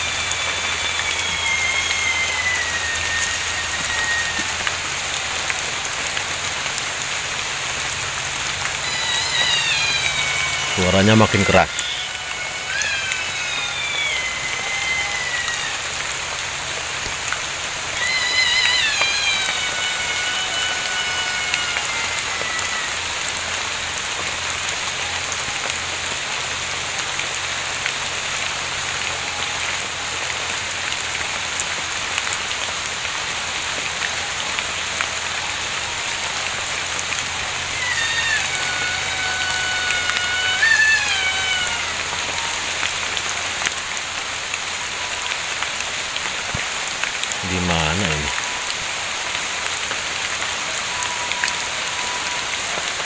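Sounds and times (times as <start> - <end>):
creature shrieking: 0.0 - 6.0, 7.8 - 24.2, 35.1 - 43.8, 46.4 - 48.7
steady rain falling: 0.0 - 53.0.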